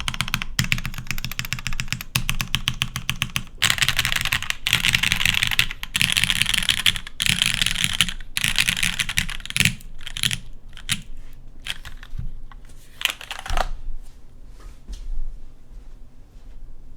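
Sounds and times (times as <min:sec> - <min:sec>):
mechanical keyboard typing: 0:00.0 - 0:12.2, 0:13.0 - 0:13.7.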